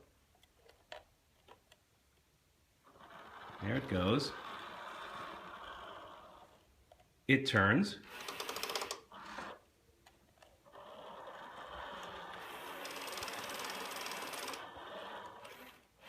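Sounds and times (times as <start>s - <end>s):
toy car motor whirring: 2.8s - 6.7s, 8.0s - 16.0s.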